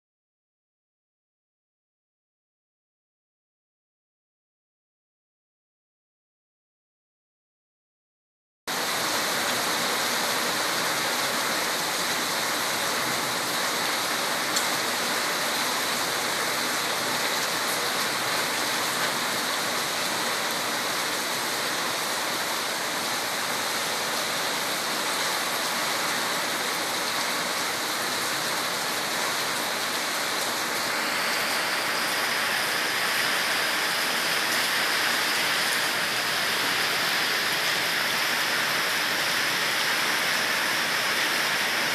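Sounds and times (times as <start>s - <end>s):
steady rain falling: 8.7s - 41.9s.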